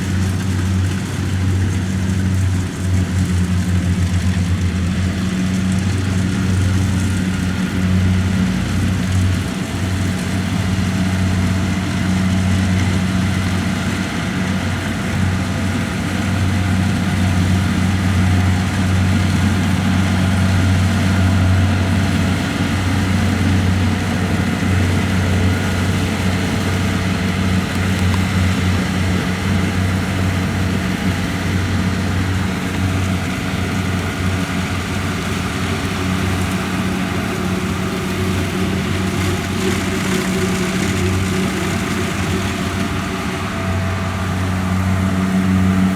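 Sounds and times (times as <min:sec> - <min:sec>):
diesel engine humming: 0:00.0 - 0:45.9.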